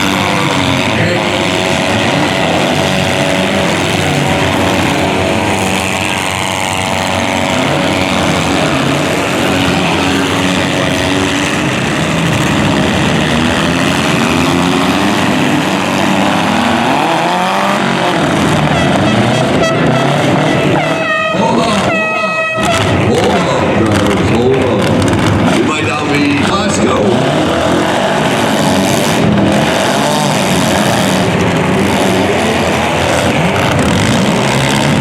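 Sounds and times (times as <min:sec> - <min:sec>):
car engines revving hard: 0:00.0 - 0:35.0
car horn: 0:15.4 - 0:24.1
dense mechanical din: 0:17.8 - 0:35.0.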